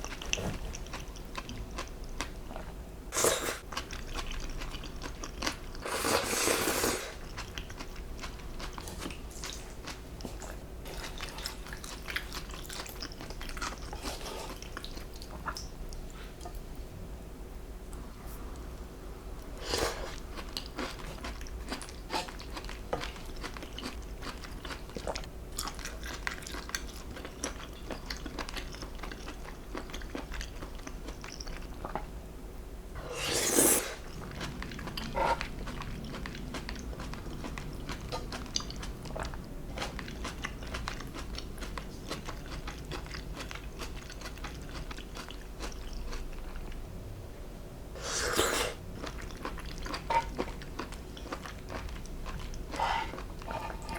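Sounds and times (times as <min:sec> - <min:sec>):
close chewing: 0:07.1 - 0:16.6, 0:20.1 - 0:31.9, 0:34.0 - 0:46.8, 0:48.5 - 0:53.9
loud bites or slurps: 0:33.1 - 0:34.0.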